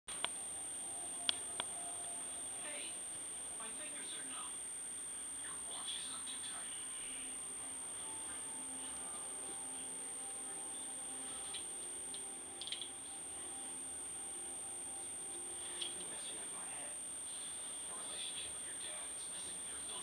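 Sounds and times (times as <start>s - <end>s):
faint low held notes: 6.1s - 20.0s.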